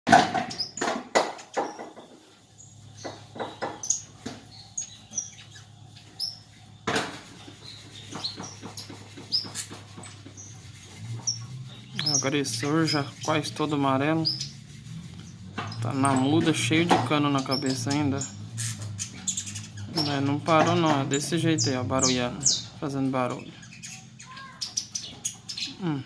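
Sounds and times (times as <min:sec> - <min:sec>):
bird knocking in cage: 0:00.1 - 0:02.2.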